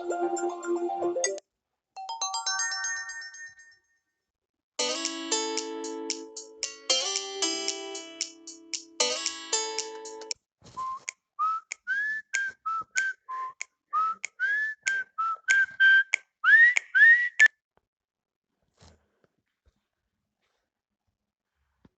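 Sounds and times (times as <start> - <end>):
whistle-like ringtone melody: 0.0 - 1.4.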